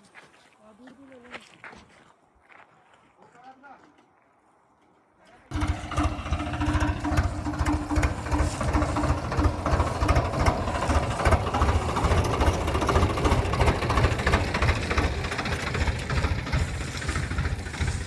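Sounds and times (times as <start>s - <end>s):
diesel engine running: 5.5s - 18.0s.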